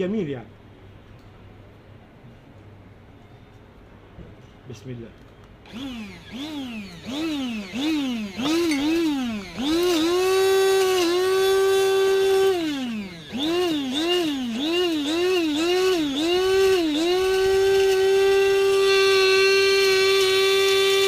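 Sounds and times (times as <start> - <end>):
small electric motor whine: 5.6 - 21.0.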